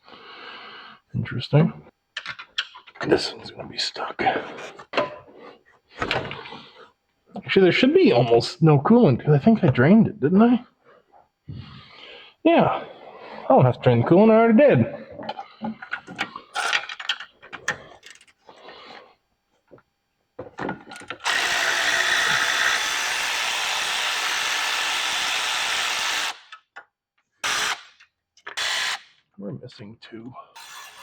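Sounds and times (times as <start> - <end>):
tools clattering against metal: 15.2 - 18.4
handheld power tool running: 21.0 - 26.5, 27.4 - 29.1, 30.6 - 31.0.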